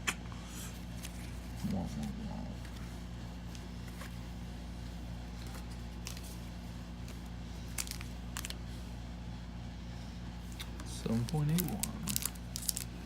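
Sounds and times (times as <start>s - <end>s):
steady low hum: 0.0s - 13.0s
foil pack crinkling: 5.4s - 6.4s, 7.0s - 8.6s, 10.5s - 13.0s.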